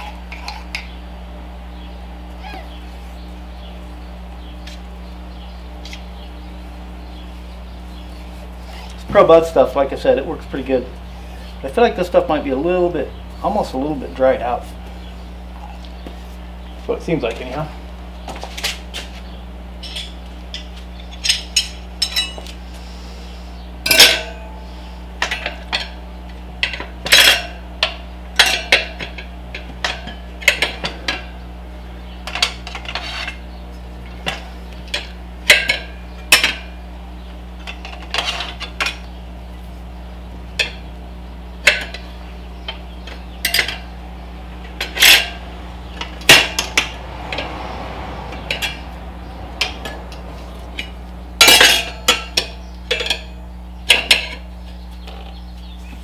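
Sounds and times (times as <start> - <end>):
tyre irons clinking on wheel rim: 19.8 - 22.6, 23.8 - 24.6, 25.2 - 31.5, 32.2 - 39.3, 41.6 - 55.6.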